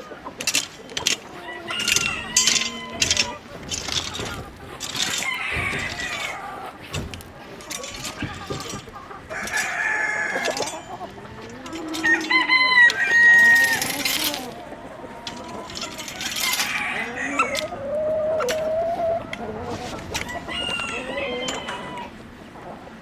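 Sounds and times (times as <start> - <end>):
chickens clucking: 0.0 - 23.0
rooster crowing: 1.4 - 3.4, 5.0 - 6.7, 9.3 - 10.9, 11.6 - 14.5, 16.2 - 19.4, 20.2 - 22.2.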